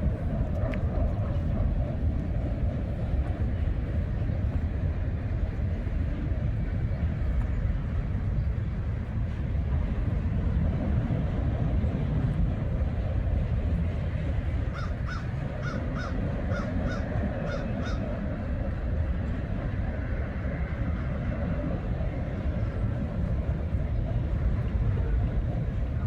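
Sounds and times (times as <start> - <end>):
low rumble: 0.0 - 14.8.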